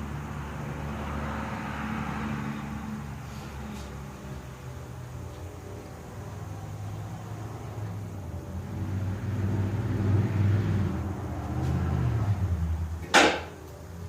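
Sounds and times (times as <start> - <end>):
sharp bang: 13.0 - 13.6.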